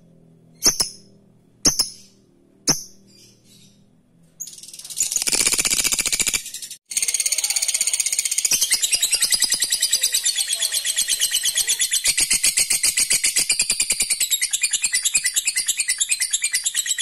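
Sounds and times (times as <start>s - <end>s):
lovebird rapid chatter call: 4.4s - 17.0s.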